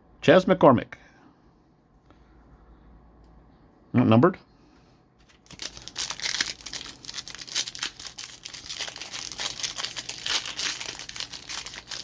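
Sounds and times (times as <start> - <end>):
foil wrapper crinkling and tearing: 5.2 - 12.0.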